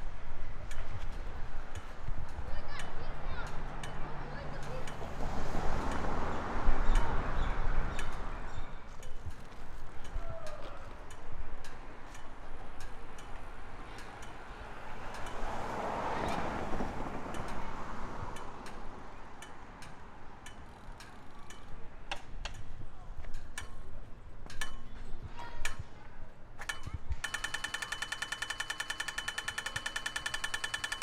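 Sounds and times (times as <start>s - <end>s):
vehicle passing: 3.2s - 8.5s, 14.7s - 19.1s
crossing button locator ticking: 26.6s - 31.0s.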